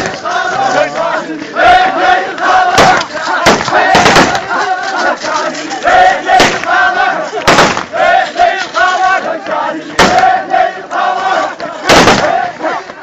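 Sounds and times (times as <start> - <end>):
crowd of men chanting: 0.0 - 13.0
sharp bangs: 2.7 - 4.6, 6.3 - 6.7, 7.4 - 8.1, 10.0 - 10.4, 11.8 - 12.5.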